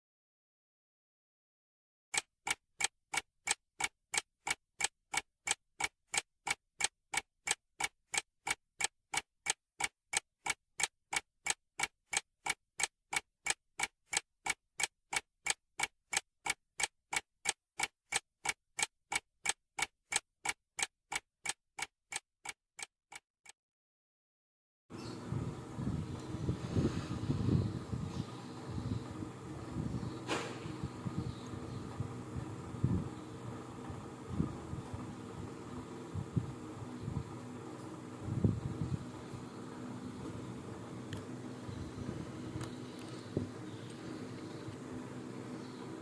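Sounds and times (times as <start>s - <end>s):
clock ticking: 2.1s - 23.6s.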